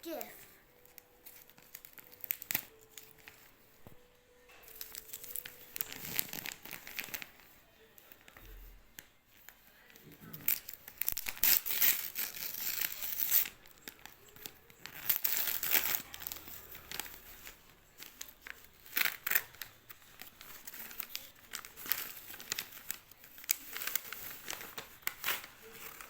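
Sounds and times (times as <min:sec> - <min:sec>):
packaging crinkling and rustling: 0:00.0 - 0:04.0, 0:04.6 - 0:26.0
packaging tearing: 0:04.7 - 0:07.4, 0:10.3 - 0:26.0.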